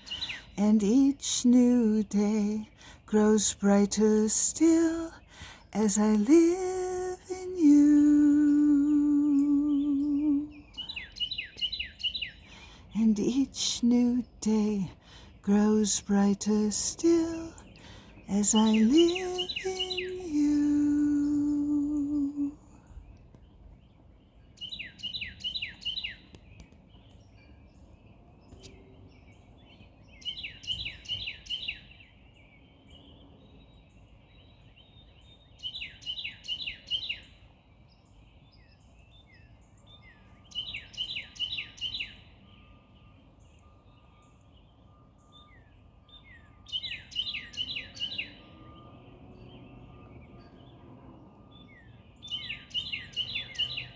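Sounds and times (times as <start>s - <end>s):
long held sung note: 0.7s - 10.8s, 18.3s - 22.8s
songbird whistling: 2.6s - 23.0s, 24.6s - 27.5s, 28.5s - 32.1s, 34.8s - 37.3s, 38.4s - 50.8s, 51.4s - 53.9s.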